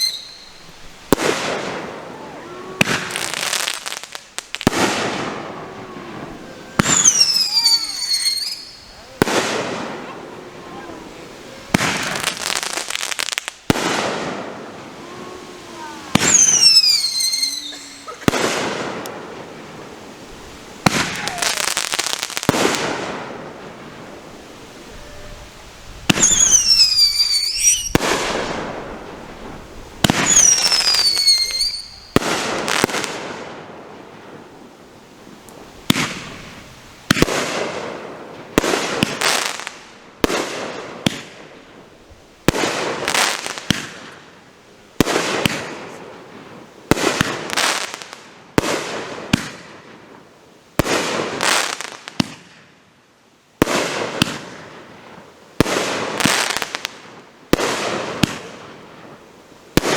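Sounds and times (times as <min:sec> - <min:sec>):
firework shells banging and crackling: 0:00.0 - 0:24.2, 0:26.0 - 0:34.6, 0:35.4 - 0:41.8, 0:42.4 - 0:44.4, 0:45.0 - 0:49.9, 0:50.8 - 0:52.7
firework whistling: 0:00.0 - 0:33.4.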